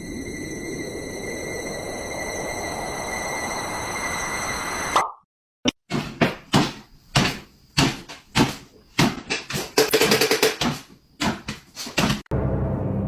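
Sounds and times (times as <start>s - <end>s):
sharp knocks: 5.9s - 12.3s.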